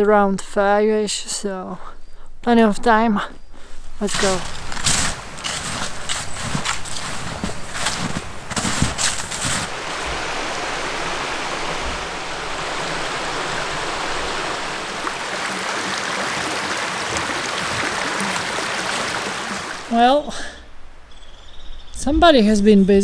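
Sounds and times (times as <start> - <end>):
footsteps: 3.9 - 19.9
stream rushing: 4.1 - 20.3.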